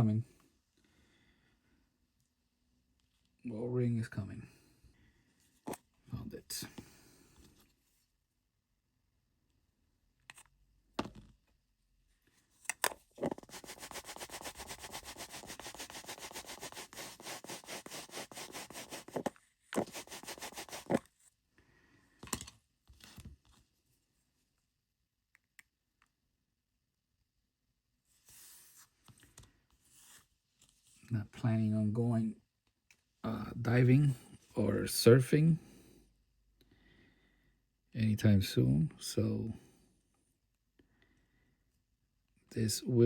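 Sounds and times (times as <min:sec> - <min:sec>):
rapid rubbing on small part: 0:13.2 - 0:21.1.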